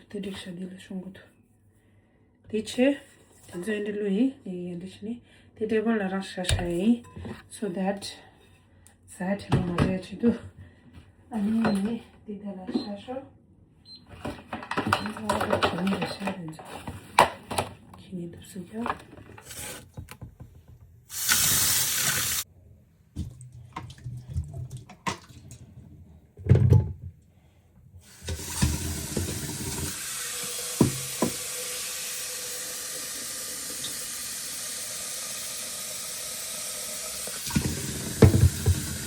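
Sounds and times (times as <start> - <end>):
tap water running into sink: 28.1 - 39.0.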